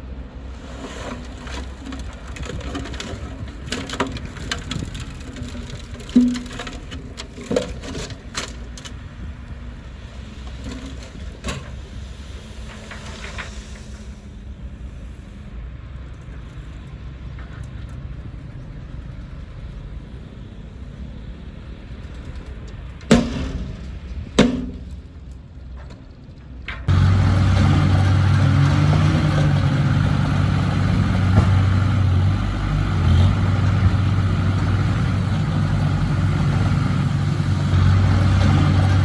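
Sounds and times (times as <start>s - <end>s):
bulldozer diesel engine running: 23.2s - 39.0s.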